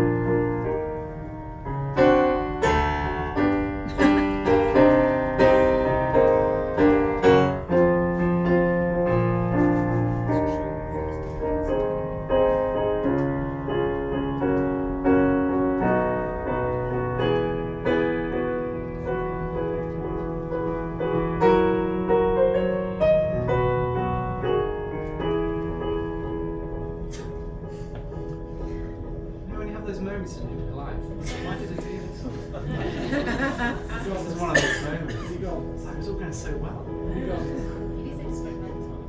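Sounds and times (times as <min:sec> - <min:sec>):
solo piano: 0:00.0 - 0:39.0.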